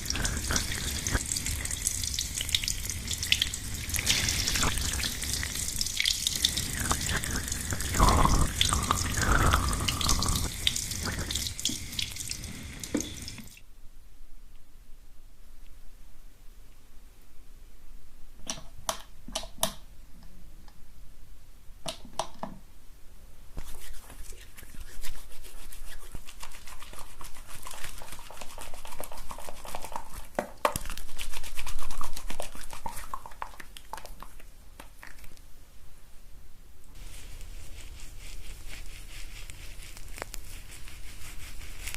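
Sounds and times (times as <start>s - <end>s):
hair scrubbed with shampoo: 0.0s - 13.6s, 23.6s - 34.4s, 37.0s - 41.9s.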